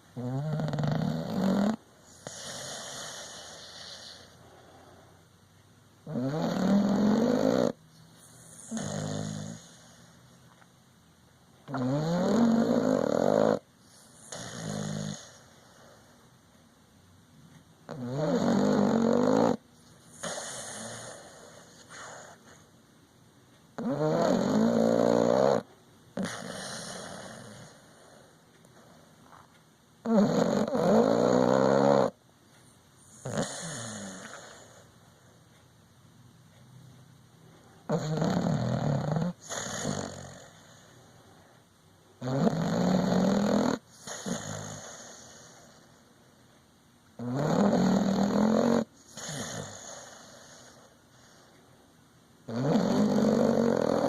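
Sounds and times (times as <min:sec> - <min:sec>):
dog snoring: 0:00.0 - 0:05.2, 0:06.0 - 0:10.6, 0:11.6 - 0:16.2, 0:17.8 - 0:22.6, 0:23.7 - 0:32.2, 0:33.0 - 0:35.0, 0:37.6 - 0:41.6, 0:42.2 - 0:46.1, 0:47.2 - 0:51.6, 0:52.4 - 0:54.0
soft breathy breaths: 0:00.0 - 0:10.7, 0:11.6 - 0:16.5, 0:18.5 - 0:22.8, 0:24.6 - 0:29.6, 0:43.8 - 0:46.7, 0:47.8 - 0:54.0.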